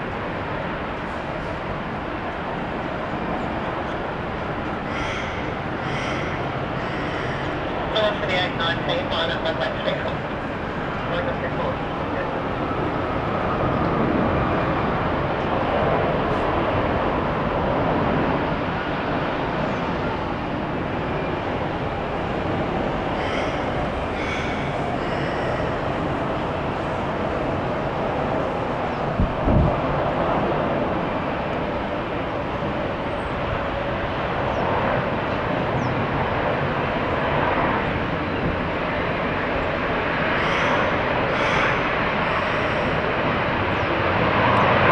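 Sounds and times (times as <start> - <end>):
jet engines rushing: 0.0 - 44.9
wind rumbling on microphone: 11.6 - 40.2.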